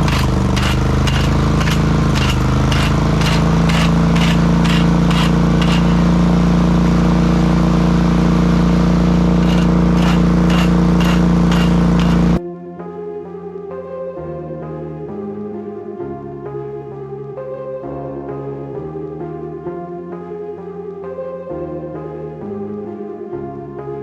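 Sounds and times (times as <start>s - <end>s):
diesel construction engine running: 0.0s - 12.4s.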